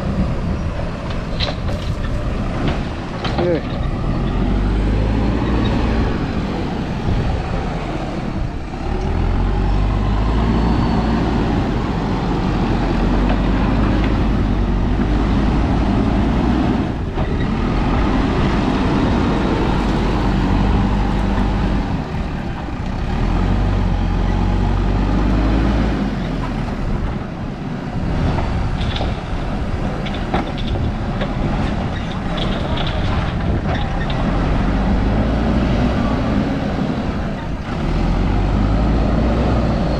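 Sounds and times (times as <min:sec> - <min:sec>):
diesel engine revving: 0:00.0 - 0:39.9
metal clanks and rattles: 0:01.1 - 0:04.4, 0:28.4 - 0:34.4.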